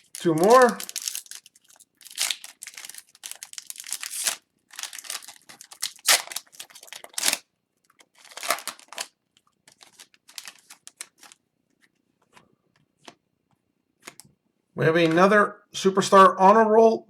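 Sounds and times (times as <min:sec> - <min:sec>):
card wrapper tearing and crinkling: 0:00.0 - 0:11.4.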